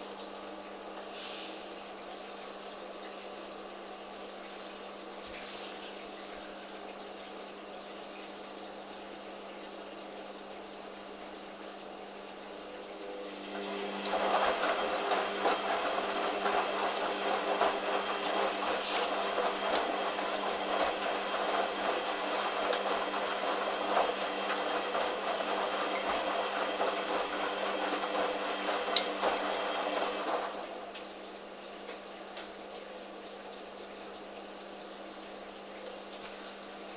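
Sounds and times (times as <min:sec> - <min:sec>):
washing machine drum whirring: 0:11.0 - 0:36.9
water swishing: 0:13.6 - 0:30.9.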